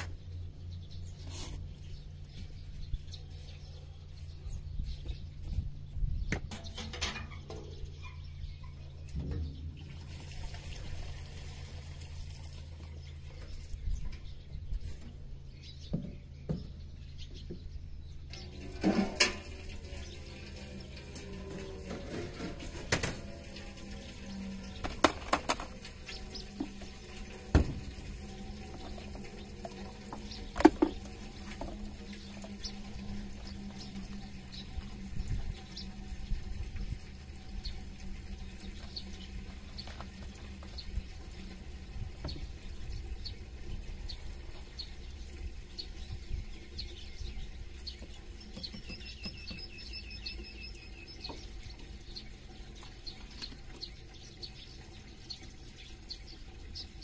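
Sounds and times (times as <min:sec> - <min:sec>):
small birds chirping: 0:00.0 - 0:10.2, 0:12.3 - 0:18.6, 0:23.3 - 0:57.0
low steady rumble: 0:00.0 - 0:57.0.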